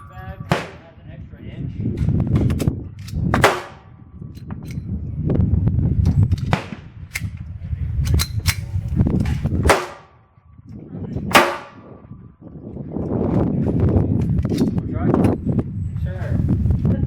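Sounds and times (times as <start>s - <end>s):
pistol shots echoing: 0.5s - 0.8s, 3.4s - 4.0s, 9.7s - 10.2s, 11.3s - 11.9s.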